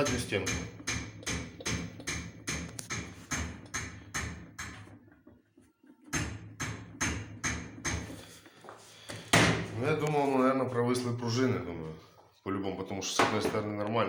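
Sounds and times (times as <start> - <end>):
washing machine drum knocking: 0.0 - 5.0, 6.1 - 8.2.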